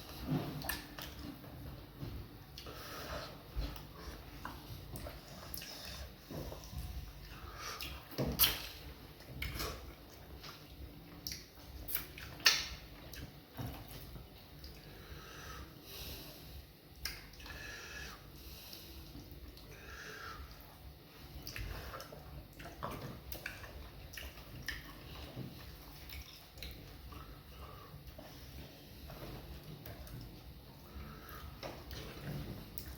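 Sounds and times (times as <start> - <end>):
wet chewing and slurping: 2.5 - 15.0, 20.5 - 32.9.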